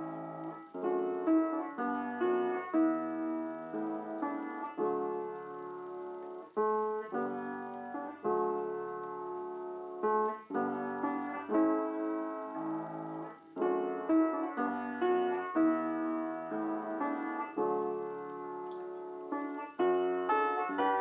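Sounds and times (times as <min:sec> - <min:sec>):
slow piano chords: 0:00.0 - 0:21.0.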